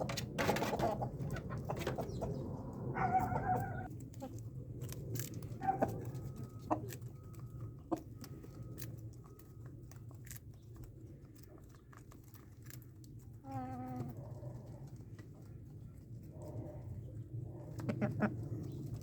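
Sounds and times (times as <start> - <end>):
chickens pecking taps and clicks: 0.0 - 19.0.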